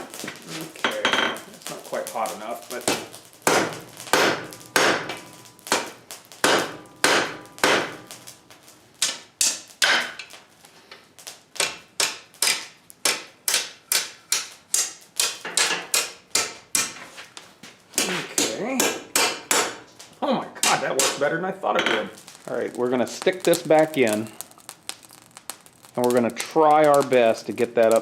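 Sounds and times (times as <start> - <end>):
hammer striking hot steel on anvil: 2.8 - 8.2, 9.0 - 10.3, 11.6 - 17.0, 18.0 - 19.9, 20.6 - 22.2.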